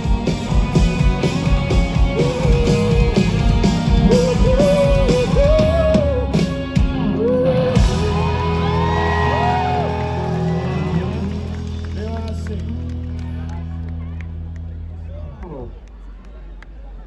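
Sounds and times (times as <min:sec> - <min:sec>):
drum kit: 0:00.0 - 0:11.9
live pop-rock band playing: 0:00.0 - 0:13.9.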